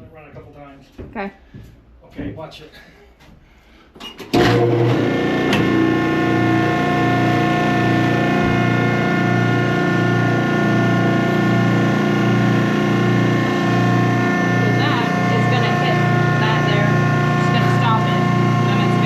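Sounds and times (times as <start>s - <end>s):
hydraulic motor and pump humming: 4.2s - 19.0s.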